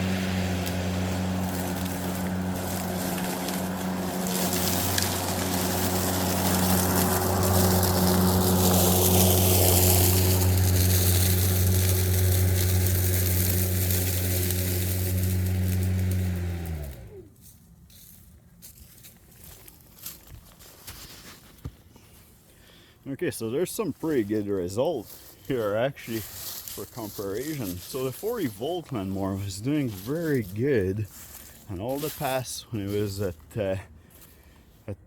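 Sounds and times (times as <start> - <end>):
mower blade spinning down: 0.0 - 17.3
lawn mower running through leaves: 0.0 - 35.0.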